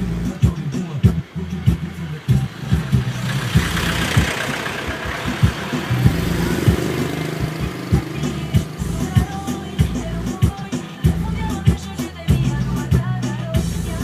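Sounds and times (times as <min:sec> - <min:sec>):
bass-heavy music with kick drum: 0:00.0 - 0:14.0
rushing noise: 0:02.8 - 0:11.0.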